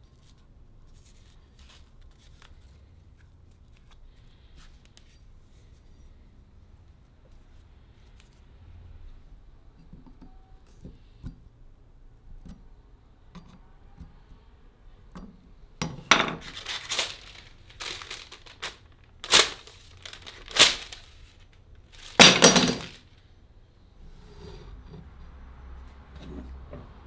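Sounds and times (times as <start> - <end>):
crinkling and clinking bursts: 16.1 - 23.0.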